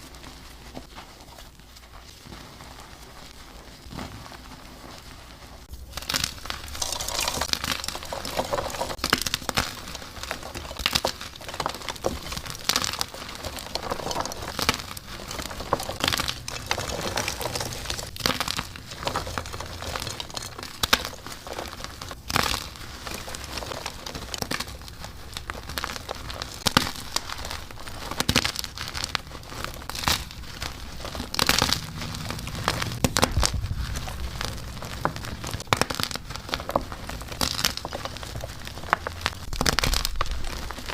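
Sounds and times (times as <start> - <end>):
chalk crunching by hand: 0.0 - 40.9
sharp cracks: 31.2 - 40.9.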